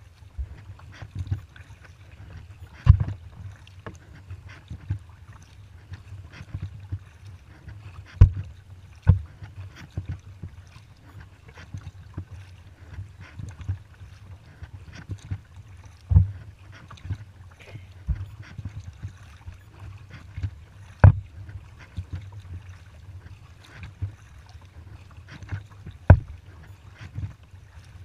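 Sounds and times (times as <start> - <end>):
paddle splashing in water: 0.0 - 28.0
sharp knocks: 21.0 - 21.2.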